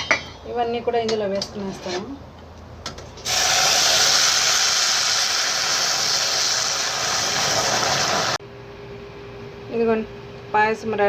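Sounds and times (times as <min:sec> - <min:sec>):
water sizzling in a hot pan: 0:03.2 - 0:08.4.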